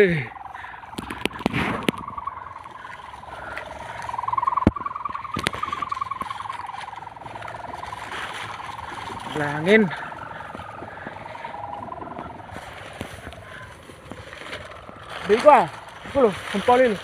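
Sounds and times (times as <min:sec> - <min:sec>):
kite hummer droning in wind: 0:00.0 - 0:17.0
sharp clicks: 0:00.9 - 0:02.7.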